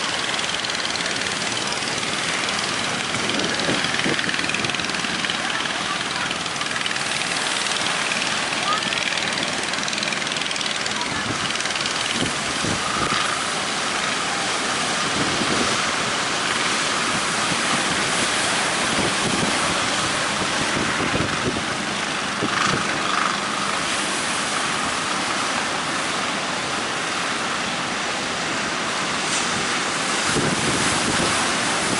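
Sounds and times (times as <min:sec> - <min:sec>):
faint boat engine: 0:00.0 - 0:31.9
surf and waves: 0:00.0 - 0:31.9
wind buffeting microphone: 0:02.3 - 0:06.0, 0:11.0 - 0:13.7, 0:14.5 - 0:23.2, 0:29.4 - 0:31.9.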